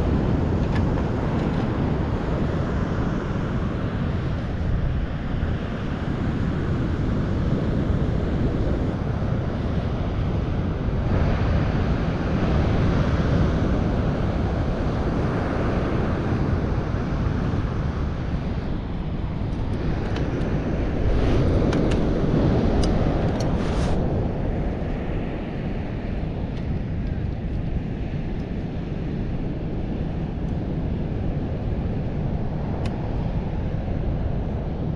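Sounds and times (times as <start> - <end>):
wind buffeting microphone: 0.0 - 34.9.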